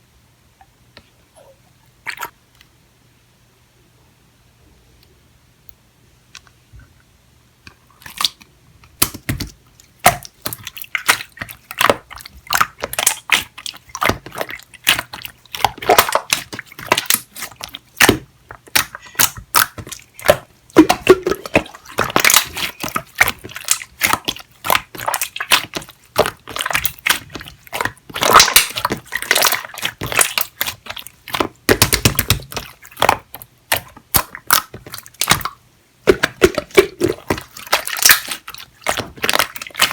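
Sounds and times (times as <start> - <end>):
slime squished by hand: 9.0 - 39.9.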